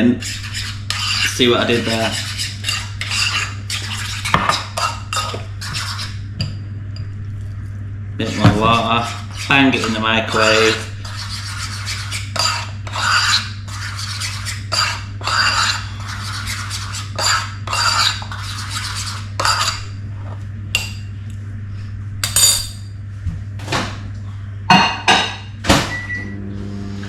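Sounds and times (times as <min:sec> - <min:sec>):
spoon scraping a bowl: 0:00.0 - 0:06.6, 0:08.2 - 0:20.0
steady low hum: 0:00.0 - 0:27.0.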